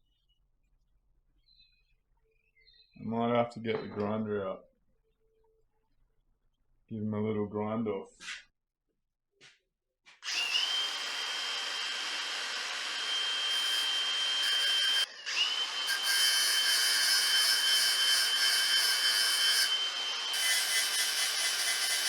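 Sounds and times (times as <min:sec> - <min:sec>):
power grinder whining: 0:10.2 - 0:22.0.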